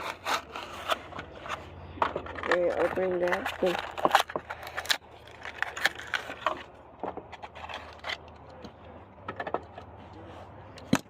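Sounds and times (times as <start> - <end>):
plastic packaging being torn open: 2.8 - 6.4.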